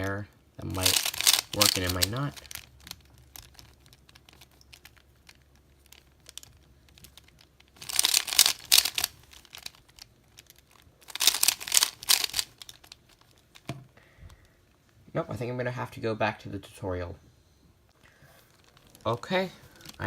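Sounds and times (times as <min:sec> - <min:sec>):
rapid plastic clacking: 0:00.0 - 0:13.8
puzzle cube clicking: 0:00.7 - 0:13.7.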